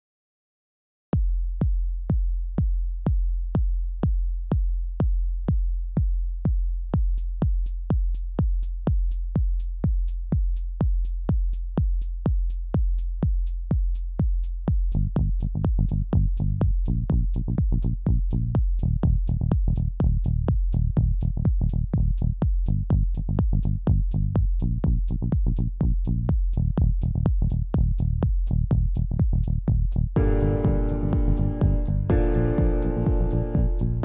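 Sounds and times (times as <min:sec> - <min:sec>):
electronic kick drum: 0:01.2 - 0:34.0
crisp hi-hat ticks: 0:07.0 - 0:30.2
synth bass line: 0:30.1 - 0:34.0.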